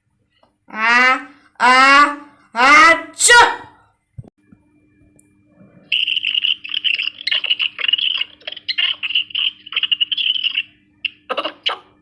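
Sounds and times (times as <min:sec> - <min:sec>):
sped-up high-pitched squeaky chatter: 0:05.9 - 0:12.0.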